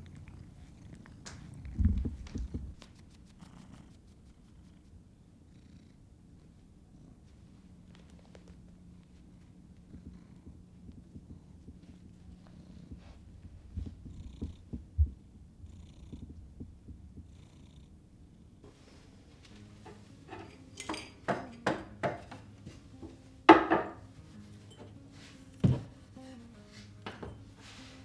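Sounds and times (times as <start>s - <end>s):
household objects knocking: 20.3s - 24.0s.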